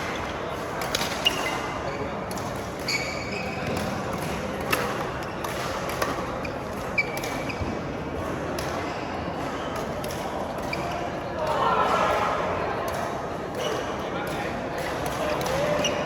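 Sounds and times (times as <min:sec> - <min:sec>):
rackets hitting shuttlecock: 0:00.0 - 0:11.1, 0:11.8 - 0:16.0
sports hall background noise: 0:00.0 - 0:16.0
shoes squeaking on court floor: 0:01.2 - 0:02.2, 0:02.8 - 0:04.0, 0:06.4 - 0:07.7, 0:15.6 - 0:16.0.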